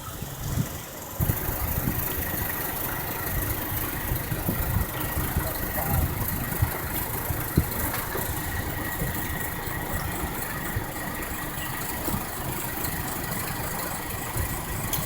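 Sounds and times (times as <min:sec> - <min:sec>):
vehicle engine idling: 0:00.0 - 0:15.0.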